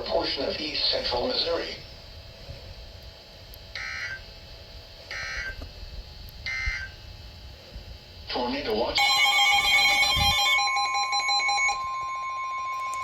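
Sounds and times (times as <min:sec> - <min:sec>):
short data bursts: 0:03.7 - 0:04.3, 0:05.1 - 0:05.6, 0:09.0 - 0:13.0.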